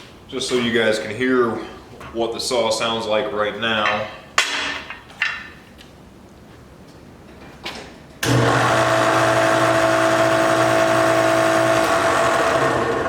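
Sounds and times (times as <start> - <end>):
table saw running: 8.2 - 13.0.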